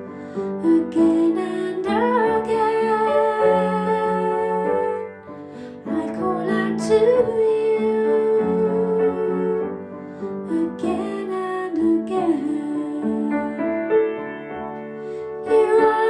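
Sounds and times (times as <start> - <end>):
person singing a slow song: 0.0 - 13.8, 15.4 - 16.0
piano accompaniment: 0.0 - 16.0.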